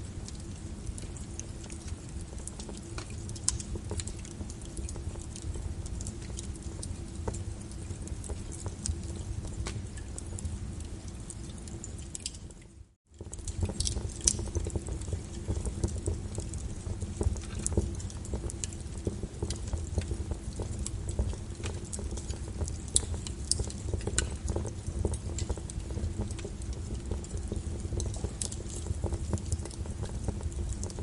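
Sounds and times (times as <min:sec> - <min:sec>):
low steady rumble: 0:00.0 - 0:31.0
wood fire crackling and popping: 0:00.0 - 0:31.0.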